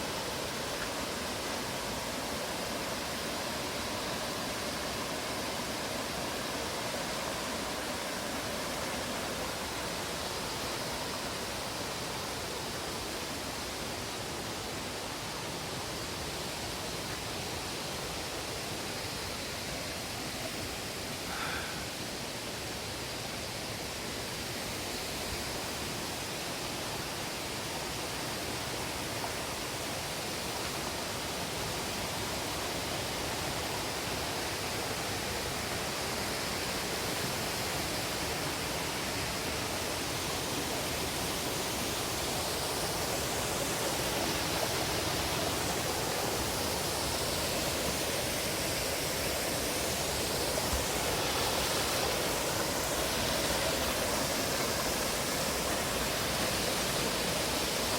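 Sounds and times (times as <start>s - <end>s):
waterfall roaring: 25.0s - 57.9s.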